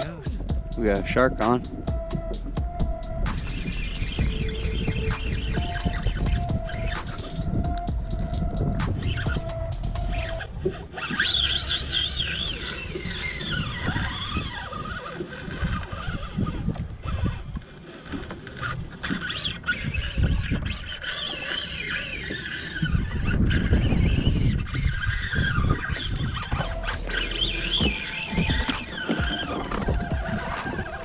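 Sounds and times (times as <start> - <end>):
wind and water rumble: 0.0 - 31.0
fishing reel drag squealing: 10.1 - 31.0.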